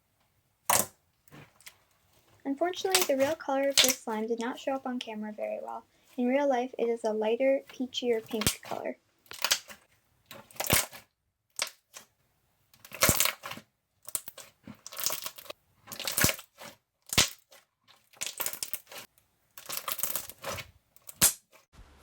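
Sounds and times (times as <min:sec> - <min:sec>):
slime crackling and popping: 0:00.6 - 0:01.8, 0:02.7 - 0:04.8, 0:08.2 - 0:12.1, 0:12.8 - 0:21.6.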